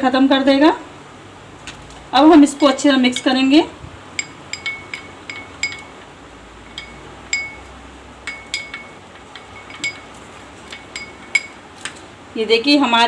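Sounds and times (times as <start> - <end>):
spoon clinking on bowl: 4.1 - 6.0, 6.6 - 11.6.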